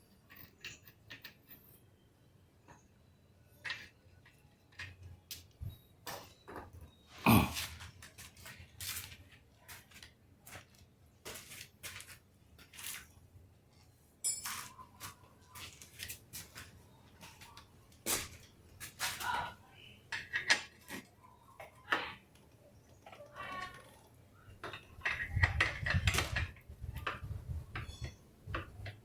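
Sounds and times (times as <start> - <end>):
metal tools clinking and knocking: 14.2 - 17.5.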